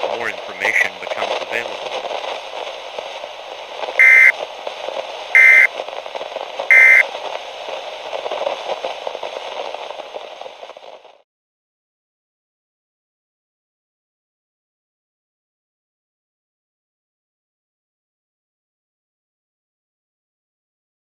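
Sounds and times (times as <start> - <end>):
radio static hiss: 0.0 - 3.1, 4.0 - 4.4, 5.4 - 8.5
digital data tone bursts: 4.0 - 4.3, 5.4 - 5.7, 6.7 - 7.0.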